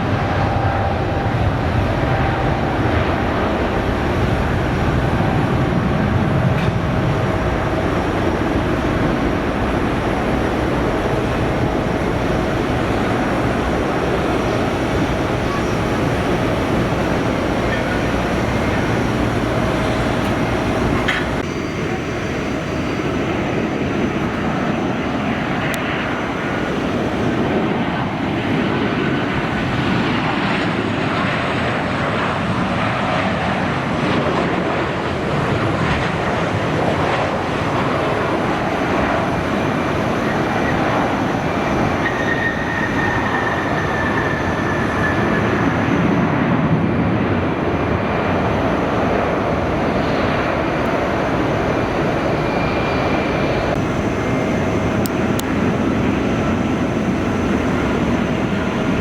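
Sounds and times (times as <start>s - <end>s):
jet engine rushing: 0.0s - 59.0s
faint whining tones: 6.6s - 28.2s, 51.8s - 59.0s.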